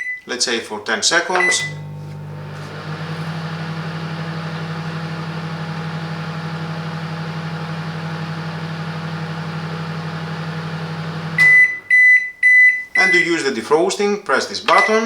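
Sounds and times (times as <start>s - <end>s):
microwave oven humming: 1.4s - 12.0s.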